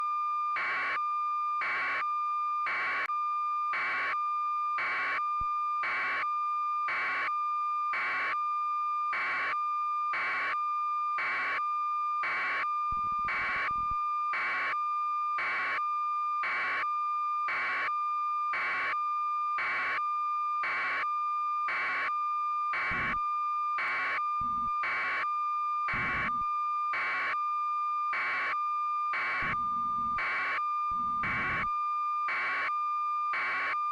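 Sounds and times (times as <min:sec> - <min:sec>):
electronic beeping pulses: 0:12.9 - 0:14.0, 0:22.8 - 0:23.2, 0:24.4 - 0:24.9, 0:25.9 - 0:26.5, 0:29.2 - 0:31.7
steady electronic tone: 0:29.4 - 0:30.2, 0:31.0 - 0:31.7.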